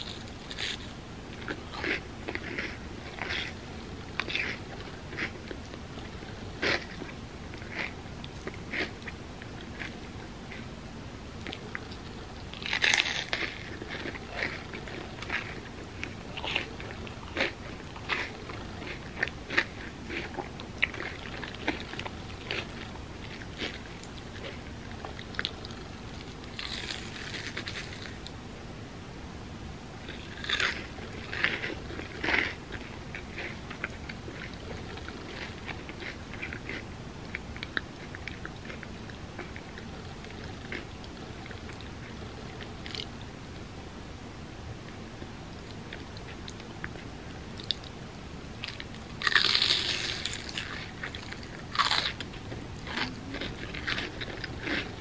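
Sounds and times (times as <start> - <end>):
crunchy bites and chewing: 11.4 - 28.3, 30.1 - 36.9, 48.6 - 55.0.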